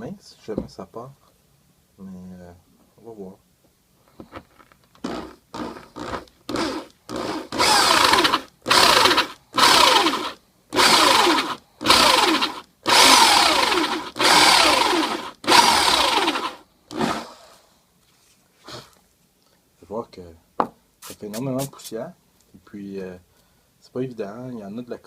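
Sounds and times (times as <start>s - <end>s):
electric drill boring: 5.0s - 17.3s.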